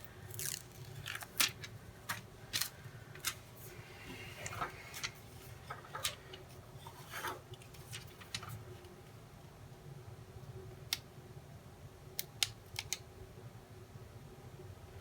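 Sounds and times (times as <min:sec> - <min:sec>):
hands peeling and pressing stickers: 0:00.0 - 0:03.4.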